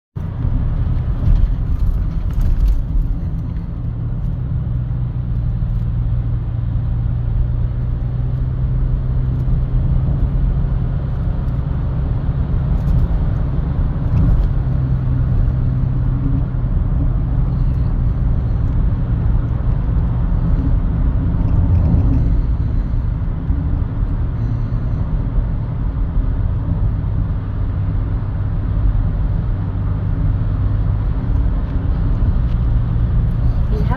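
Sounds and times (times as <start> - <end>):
heavy engine rumbling: 0.2 - 33.9.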